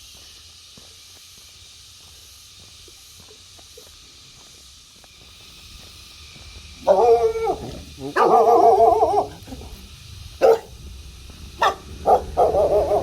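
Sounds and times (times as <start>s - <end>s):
dog barking: 6.8s - 9.7s, 10.4s - 10.8s, 11.6s - 13.0s.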